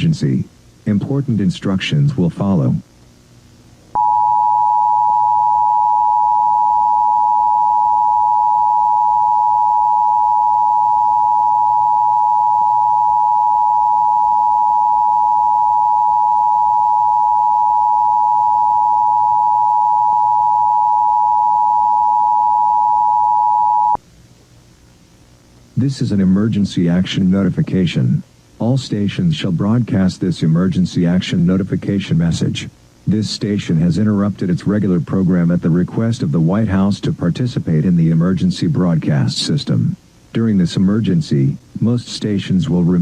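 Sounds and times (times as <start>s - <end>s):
steady two-tone alarm: 4.0s - 24.0s.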